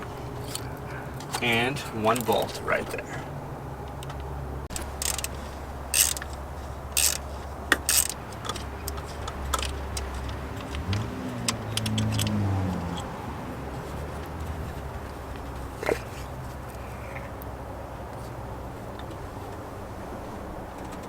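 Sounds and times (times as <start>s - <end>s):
steady low hum: 0.0s - 9.9s
clicks and rattles of hand tools: 4.0s - 13.1s.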